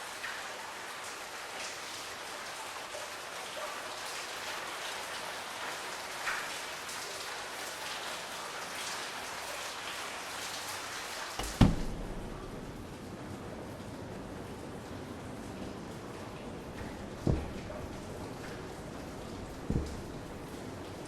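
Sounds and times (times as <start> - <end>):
rain pattering: 0.0 - 21.0
loud thump with low rumble: 11.4 - 13.0, 16.8 - 18.2, 19.4 - 20.5.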